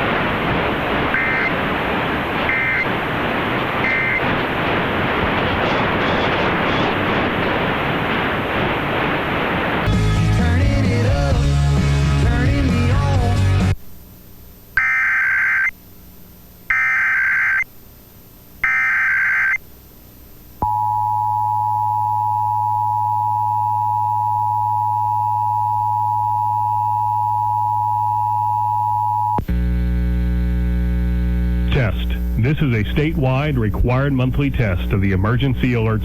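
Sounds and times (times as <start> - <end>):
warbling data tones: 0.1 - 8.1, 16.7 - 17.7, 18.6 - 19.6
low hum: 19.6 - 36.0.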